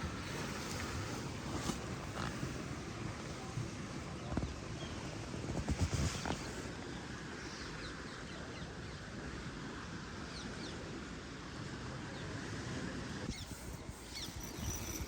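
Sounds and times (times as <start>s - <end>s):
small birds chirping: 13.3s - 15.0s.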